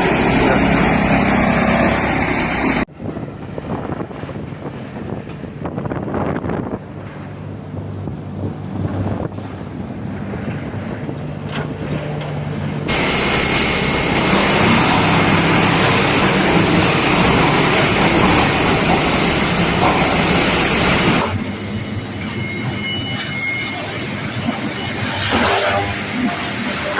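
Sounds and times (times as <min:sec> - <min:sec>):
wood chipper humming: 0:00.0 - 0:02.8, 0:12.9 - 0:22.9
wood chipper grinding: 0:12.9 - 0:21.8.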